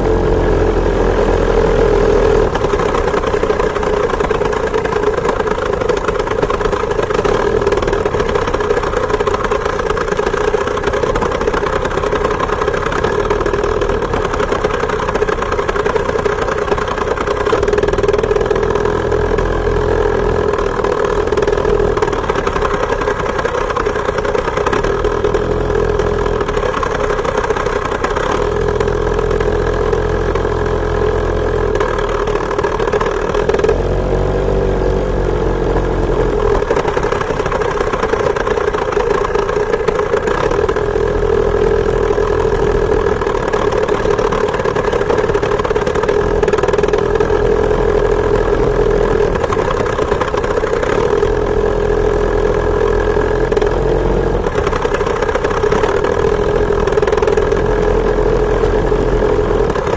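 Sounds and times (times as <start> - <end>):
two-stroke moped engine running: 0.0 - 59.9.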